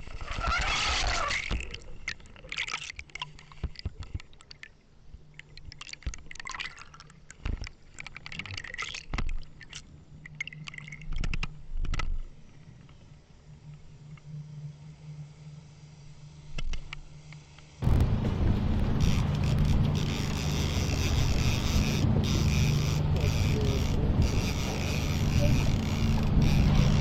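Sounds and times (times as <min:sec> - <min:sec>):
water splashing and sloshing: 0:00.0 - 0:13.0, 0:16.6 - 0:27.0
boat engine hum: 0:17.8 - 0:27.0.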